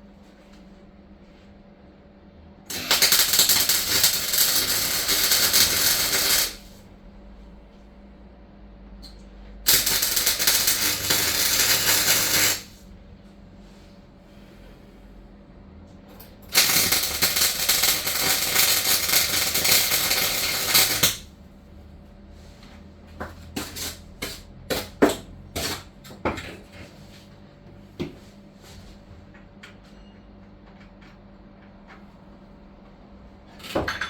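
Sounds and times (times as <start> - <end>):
welder crackling: 2.7 - 6.8, 9.7 - 12.8, 16.5 - 21.3.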